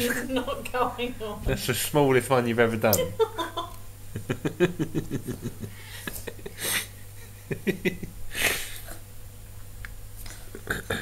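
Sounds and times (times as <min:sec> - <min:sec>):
wheezy breathless laughter: 0:05.5 - 0:07.0, 0:08.3 - 0:09.0.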